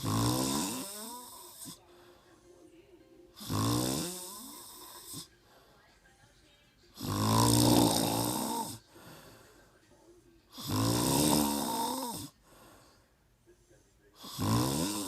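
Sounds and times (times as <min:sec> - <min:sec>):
person snoring: 0:00.0 - 0:02.1, 0:03.4 - 0:05.3, 0:07.0 - 0:09.4, 0:10.5 - 0:12.8, 0:14.2 - 0:15.0.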